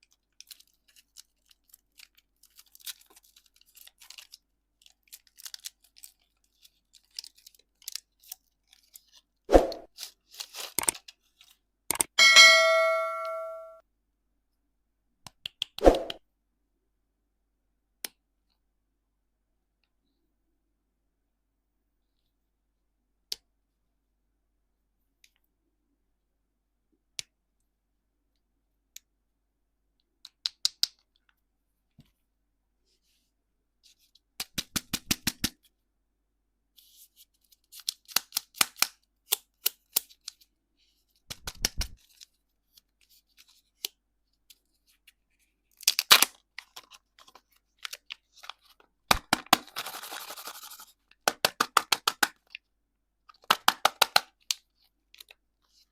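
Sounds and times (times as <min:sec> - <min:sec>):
candy packaging crackling: 0:00.0 - 0:11.6, 0:44.6 - 0:52.6.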